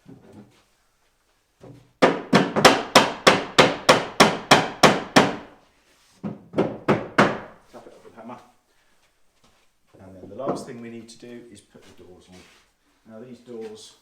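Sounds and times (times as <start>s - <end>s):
hammer knocking on wood: 1.6s - 5.5s, 6.2s - 7.6s.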